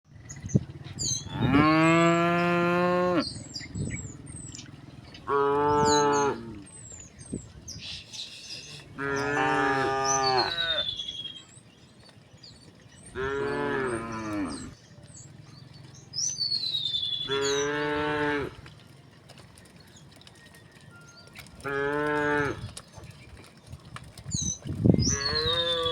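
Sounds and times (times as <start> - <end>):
small birds chirping: 0.1 - 25.9
cows mooing: 1.0 - 3.7, 5.1 - 6.8, 8.8 - 10.9, 13.0 - 14.9, 17.1 - 18.9, 21.6 - 22.8, 25.0 - 25.9.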